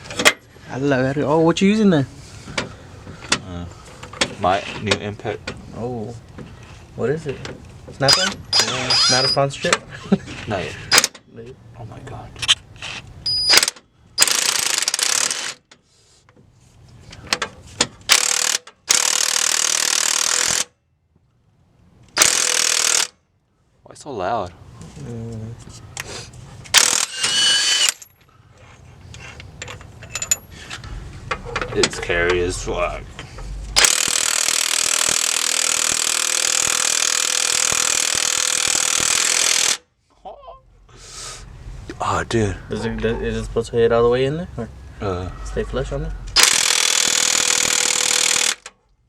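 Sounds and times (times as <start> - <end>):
impact wrench hammering: 33.8 - 39.8, 46.4 - 48.7.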